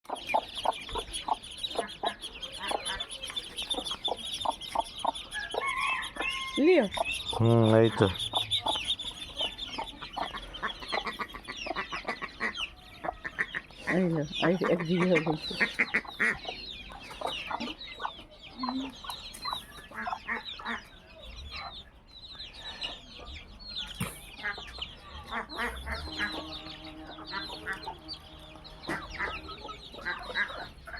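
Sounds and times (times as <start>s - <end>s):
chickens clucking: 0.0s - 30.9s
chicks peeping: 0.0s - 30.9s.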